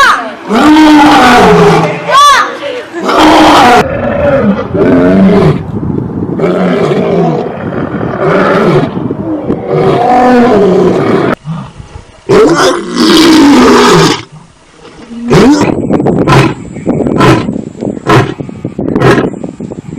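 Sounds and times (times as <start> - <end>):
lion roaring: 0.5 - 2.0, 3.0 - 5.7, 6.4 - 11.7, 12.3 - 14.3, 15.2 - 18.4.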